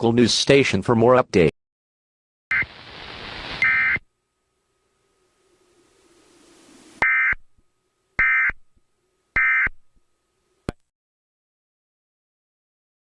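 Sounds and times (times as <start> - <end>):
buzzy digital data chirps: 2.5 - 4.1, 5.8 - 7.4, 8.2 - 8.6
faint hiss: 2.5 - 7.0.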